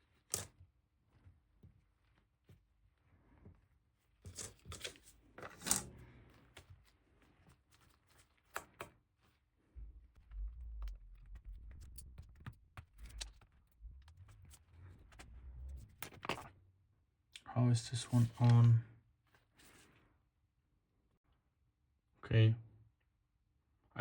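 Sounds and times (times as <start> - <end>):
low rumble: 9.8 - 16.5.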